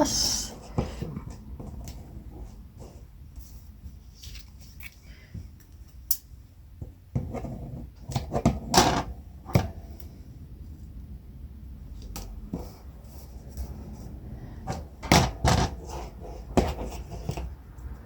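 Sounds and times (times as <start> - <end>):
paper and card rustling: 3.4 - 5.1.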